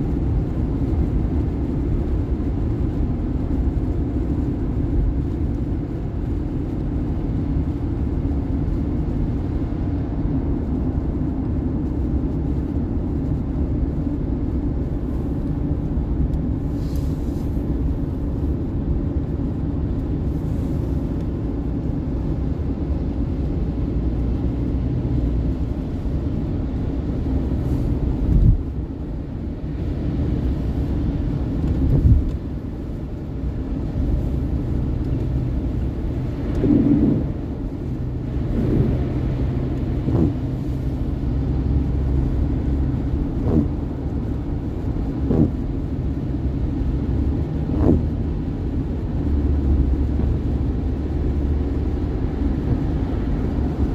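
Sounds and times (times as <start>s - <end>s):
car driving on highway: 0.0s - 53.9s
low thumps: 38.3s - 40.8s, 45.2s - 45.7s.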